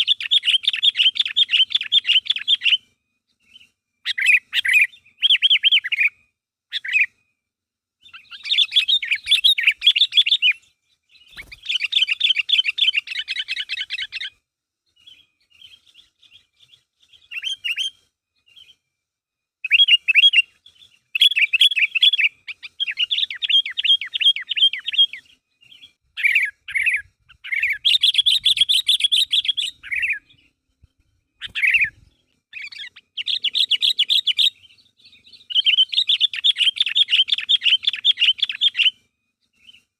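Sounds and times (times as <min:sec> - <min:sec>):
bulbul chattering calls: 0:00.0 - 0:02.8, 0:08.0 - 0:10.6, 0:11.2 - 0:14.3, 0:21.2 - 0:25.2, 0:25.8 - 0:30.4, 0:31.4 - 0:39.0.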